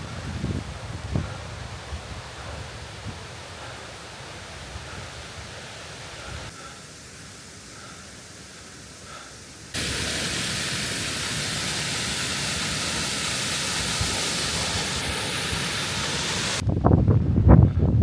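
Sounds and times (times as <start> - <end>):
wind buffeting microphone: 0.0 - 3.8, 12.1 - 18.0
mountain stream rushing: 1.7 - 16.6.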